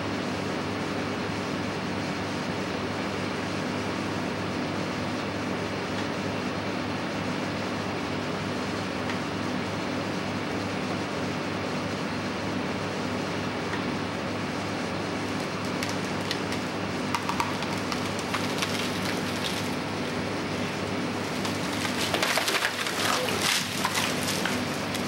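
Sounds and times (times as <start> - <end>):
engine running steadily: 0.0 - 25.0
crackling and snapping: 15.2 - 25.0.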